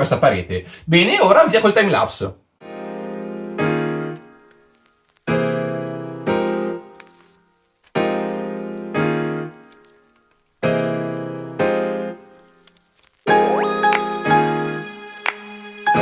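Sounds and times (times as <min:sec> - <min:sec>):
sustained keyboard chords: 0:02.6 - 0:04.7, 0:10.6 - 0:12.5, 0:13.3 - 0:16.0.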